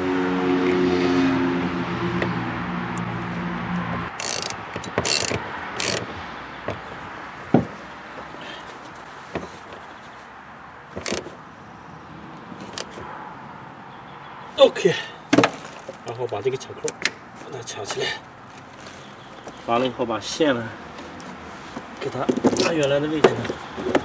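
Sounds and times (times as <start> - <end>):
plastic connectors clicking: 4.2 - 6.0.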